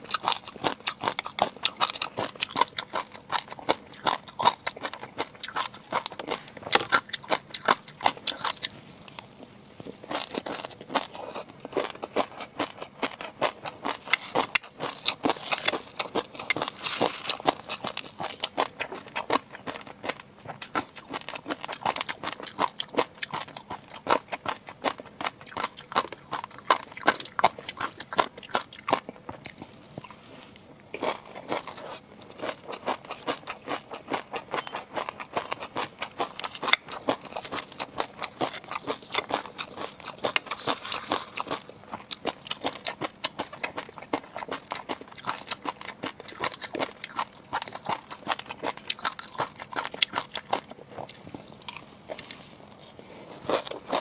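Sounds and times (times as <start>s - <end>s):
person chewing with wet crunches: 0.0s - 54.0s.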